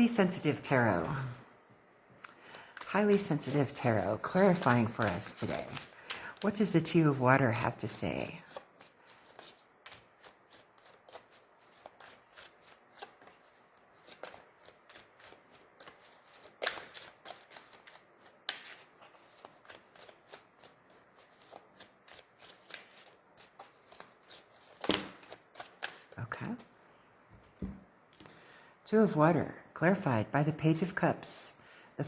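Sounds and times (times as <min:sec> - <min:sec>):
cards being shuffled: 0:02.5 - 0:06.6, 0:08.2 - 0:26.2.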